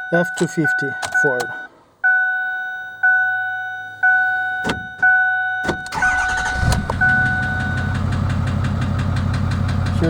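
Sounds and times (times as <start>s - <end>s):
vehicle warning chime dinging: 0.0s - 8.1s
diesel engine cranking and running: 5.9s - 10.0s.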